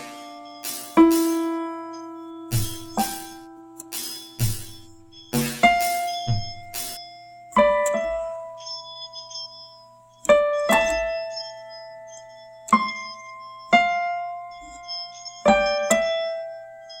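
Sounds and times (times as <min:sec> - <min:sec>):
slow piano music: 0:00.0 - 0:17.0.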